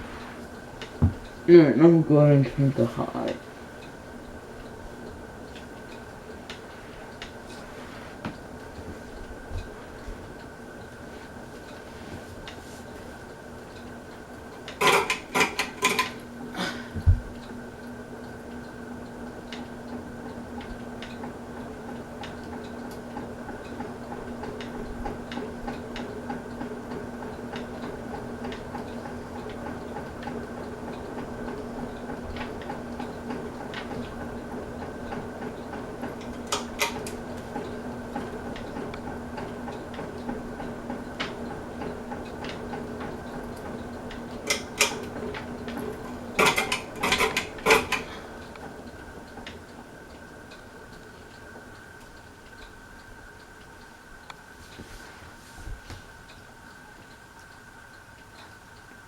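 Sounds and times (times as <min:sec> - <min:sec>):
ceiling fan motor hum: 0:00.0 - 0:59.0.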